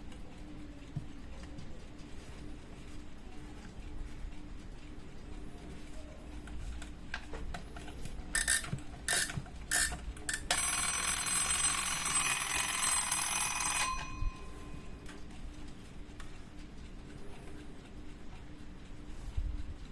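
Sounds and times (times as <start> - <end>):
alarm clock ringing: 8.4 - 15.1.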